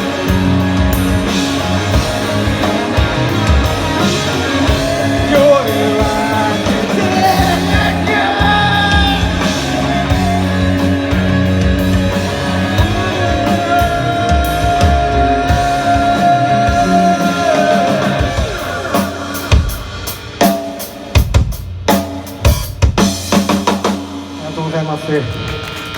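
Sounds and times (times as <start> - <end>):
rock band playing: 0.0 - 25.9.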